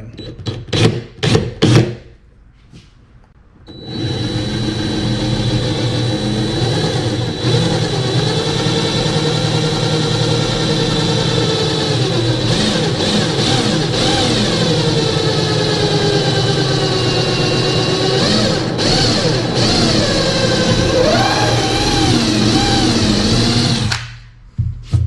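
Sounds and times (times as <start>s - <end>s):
electric drill boring into wood: 3.7s - 24.0s.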